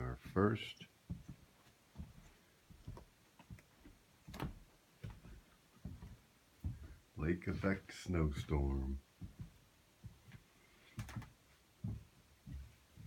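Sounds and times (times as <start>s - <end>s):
faint clicks and taps: 1.1s - 7.0s, 9.2s - 12.8s.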